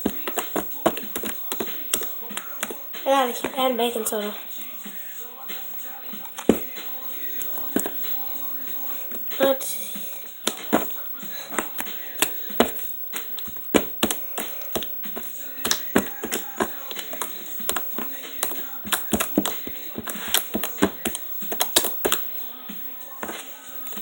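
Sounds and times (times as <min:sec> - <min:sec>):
slime clicking and popping: 0:11.6 - 0:22.3.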